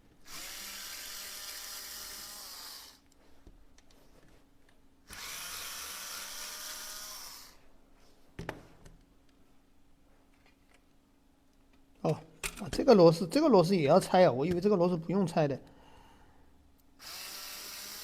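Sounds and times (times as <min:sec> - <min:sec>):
electric screwdriver whining: 0:00.3 - 0:03.0, 0:05.1 - 0:07.6, 0:17.0 - 0:18.0.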